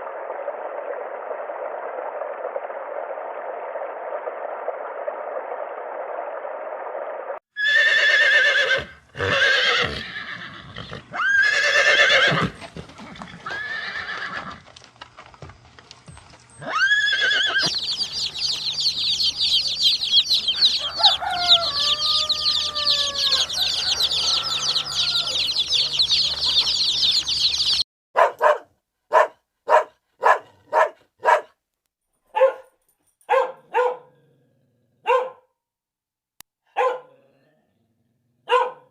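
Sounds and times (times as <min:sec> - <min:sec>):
chicks peeping: 0:17.6 - 0:27.8
low clucking calls: 0:17.6 - 0:27.8
dog barking: 0:28.2 - 0:31.6, 0:32.3 - 0:34.2, 0:35.0 - 0:35.5, 0:36.7 - 0:37.2, 0:38.4 - 0:38.9.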